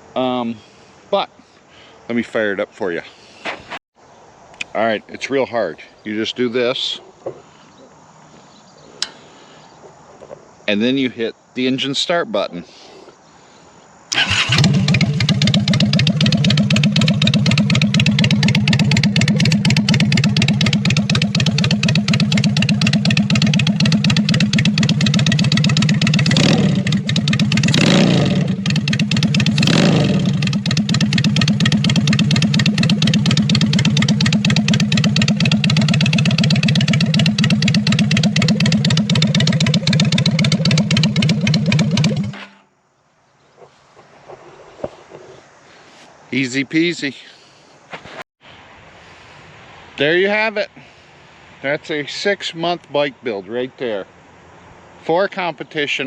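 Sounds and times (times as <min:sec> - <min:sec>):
motorcycle engine running: 0:14.2 - 0:42.5.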